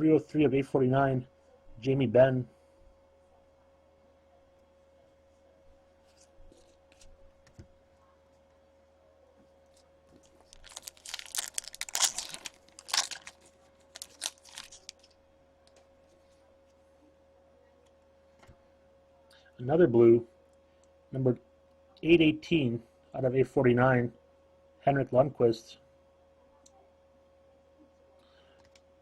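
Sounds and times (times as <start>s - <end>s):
foil wrapper tearing and crackling: 10.4s - 15.1s.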